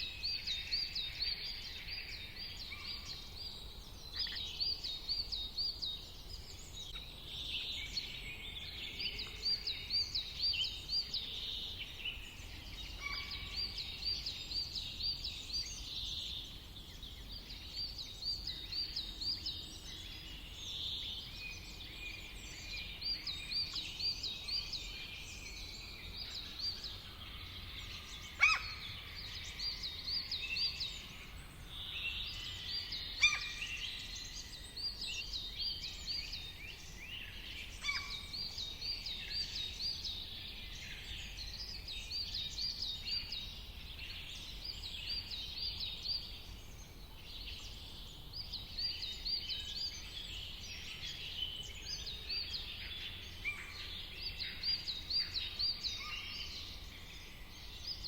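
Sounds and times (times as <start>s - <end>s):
songbirds singing: 0.0s - 58.0s.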